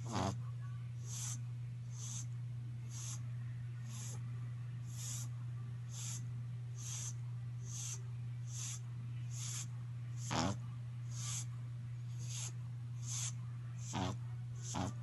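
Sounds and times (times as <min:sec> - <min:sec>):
dog snoring: 0:00.0 - 0:00.4, 0:01.0 - 0:02.3, 0:02.9 - 0:03.2, 0:03.8 - 0:04.2, 0:04.9 - 0:05.3, 0:05.9 - 0:06.2, 0:06.8 - 0:11.5, 0:12.1 - 0:15.0.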